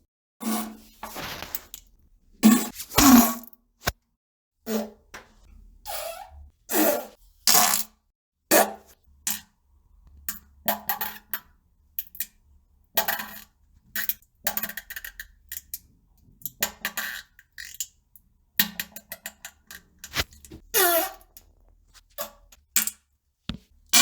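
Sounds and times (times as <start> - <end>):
fart sounds: 2.4 - 3.5.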